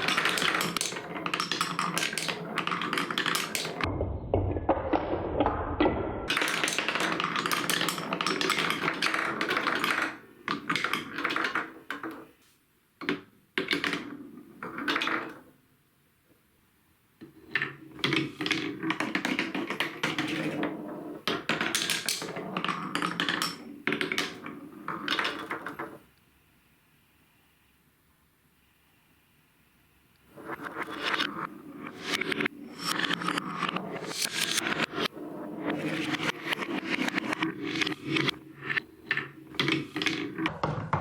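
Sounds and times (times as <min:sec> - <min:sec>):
marbles rolling down plastic track: 0:00.0 - 0:05.6, 0:06.3 - 0:12.3, 0:13.6 - 0:15.4, 0:17.4 - 0:26.0, 0:30.6 - 0:40.7.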